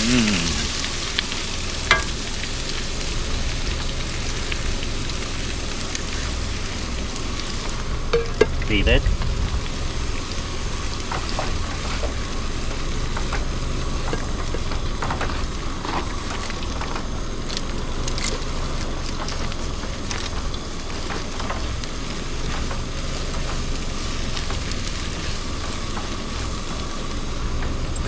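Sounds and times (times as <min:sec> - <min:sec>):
meat sizzling in a skillet: 0:00.0 - 0:27.8.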